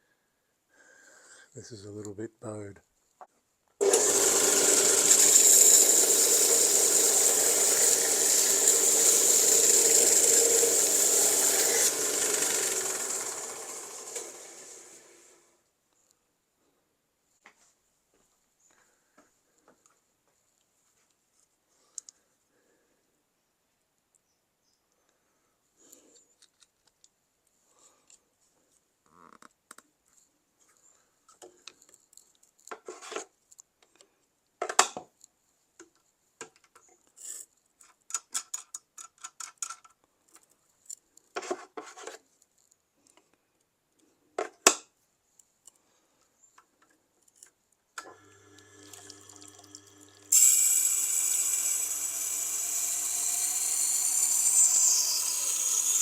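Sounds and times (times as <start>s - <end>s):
knife grinding on wheel: 3.8s - 14.7s, 50.3s - 56.0s
sharpening machine motor hum: 3.8s - 15.3s, 48.1s - 56.0s.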